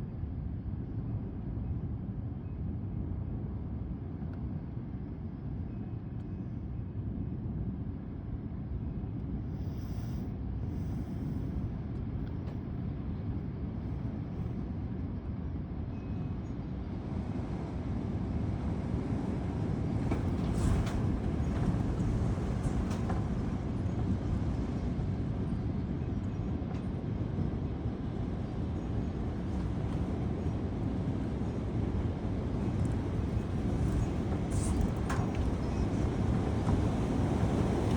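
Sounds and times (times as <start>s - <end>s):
wind gusting on microphone: 15.6s - 37.9s.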